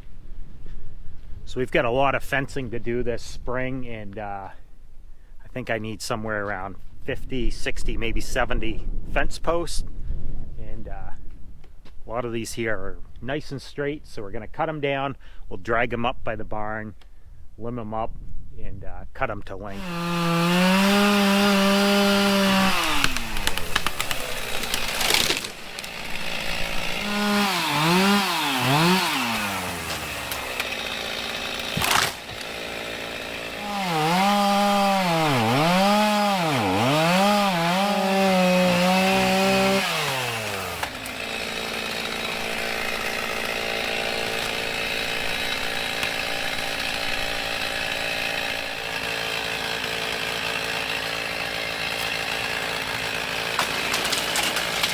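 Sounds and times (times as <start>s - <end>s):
chainsaw cutting wood: 19.7s - 54.9s.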